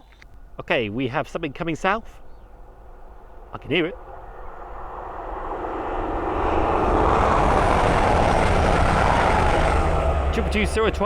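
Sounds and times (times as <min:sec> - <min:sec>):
train passing with rumbling roar: 0:00.4 - 0:11.0.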